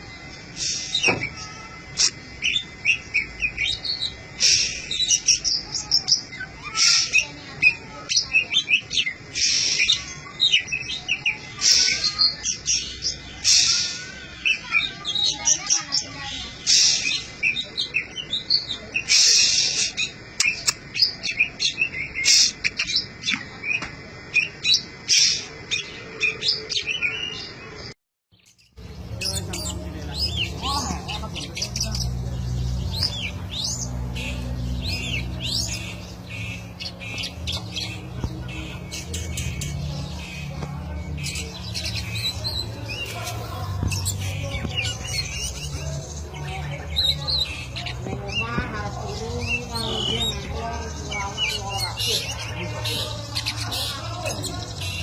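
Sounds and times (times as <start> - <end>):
songbird singing: 0.0 - 55.0
bird singing sharp chirps: 28.5 - 55.0
low hum: 28.8 - 55.0.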